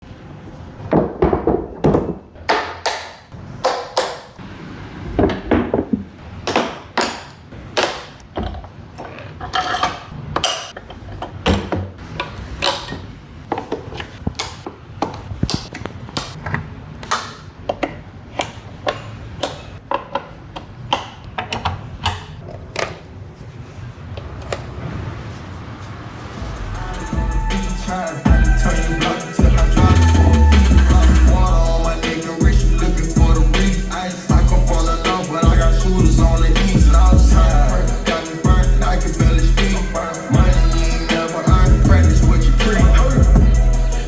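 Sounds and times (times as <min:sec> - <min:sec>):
metal hardware clanking: 0:09.0 - 0:10.8.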